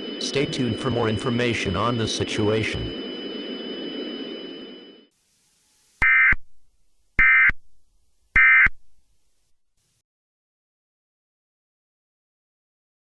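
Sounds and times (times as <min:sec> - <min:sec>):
digital data tone bursts: 0:00.0 - 0:05.0, 0:06.0 - 0:06.4, 0:07.2 - 0:07.6, 0:08.4 - 0:08.8
background hiss: 0:05.1 - 0:10.0.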